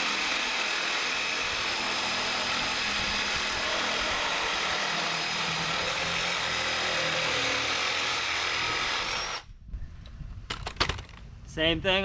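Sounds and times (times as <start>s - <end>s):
reciprocating saw cutting metal: 0.0s - 9.5s.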